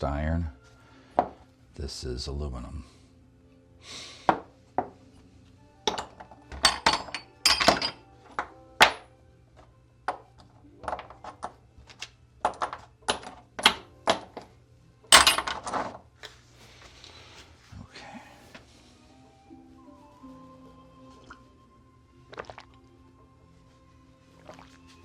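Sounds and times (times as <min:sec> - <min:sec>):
metal hardware clinking and knocking: 0:05.8 - 0:09.1, 0:10.1 - 0:14.5, 0:15.1 - 0:16.0.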